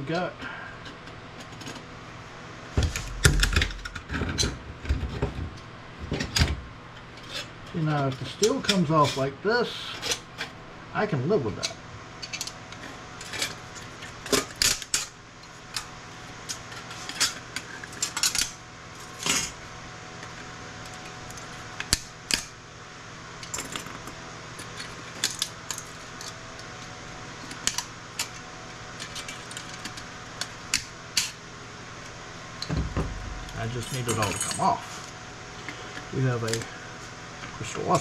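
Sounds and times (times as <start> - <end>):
steady low hum: 0.0 - 38.0
metallic clicks and clinks: 33.3 - 34.8.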